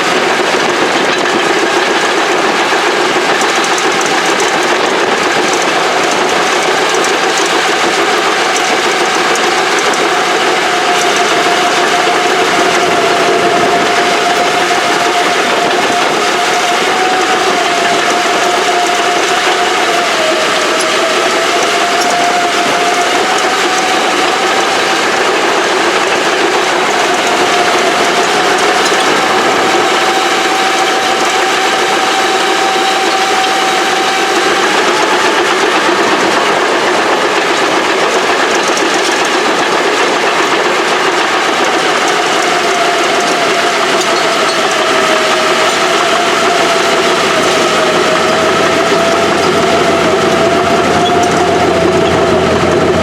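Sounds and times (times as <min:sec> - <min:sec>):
heavy machinery running: 0:00.0 - 0:53.0
machine whine: 0:00.0 - 0:53.0.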